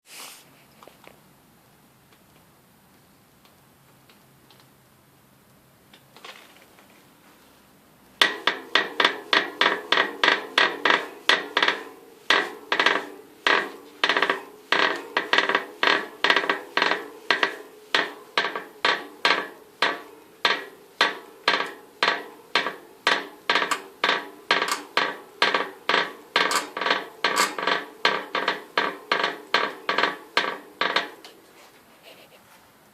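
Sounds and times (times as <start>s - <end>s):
bicycle wheel ringing crack: 8.2s - 31.4s.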